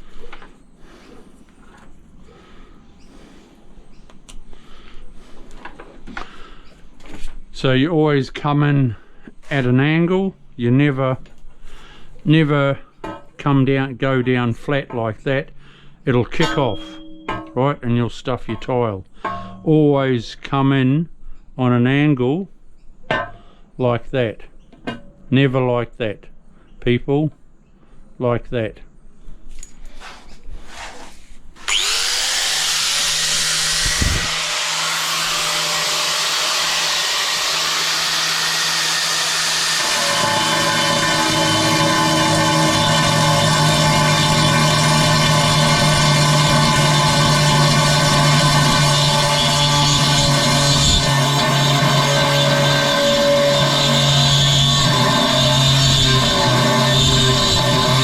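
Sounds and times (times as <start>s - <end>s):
hole saw scraping tile: 29.9s - 58.0s
power drill whining: 31.6s - 58.0s.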